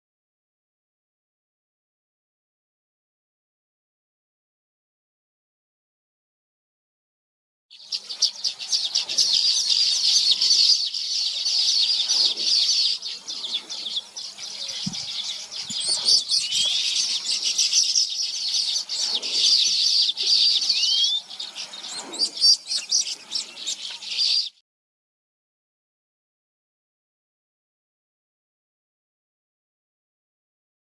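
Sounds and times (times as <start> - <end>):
small birds chirping: 7.7 - 24.6.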